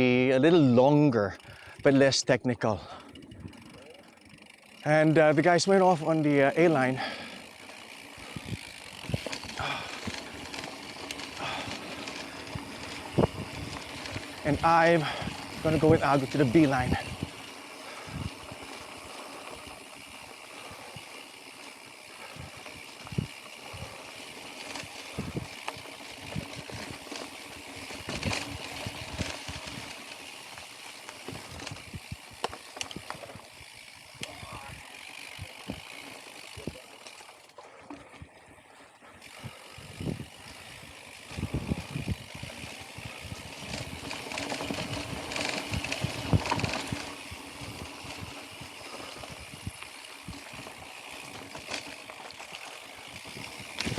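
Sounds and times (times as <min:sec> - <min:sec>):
tyre noise on dirt: 0:06.4 - 0:53.9
bike knocks and rattles: 0:24.4 - 0:33.9.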